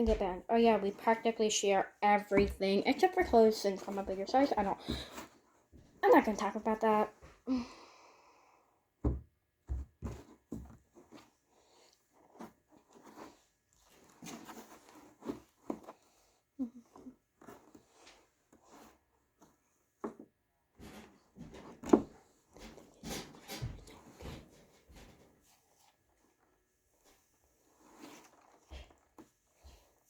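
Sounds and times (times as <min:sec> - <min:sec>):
dull thumps: 0:00.0 - 0:01.2.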